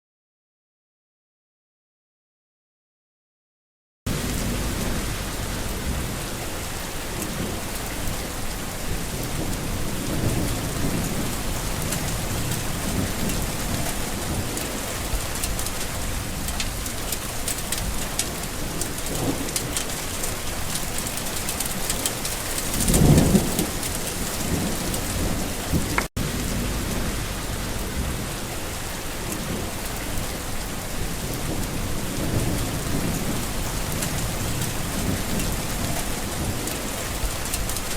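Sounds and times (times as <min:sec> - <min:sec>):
low rumble of thunder: 0:04.1 - 0:37.9
steady rain: 0:04.1 - 0:37.9.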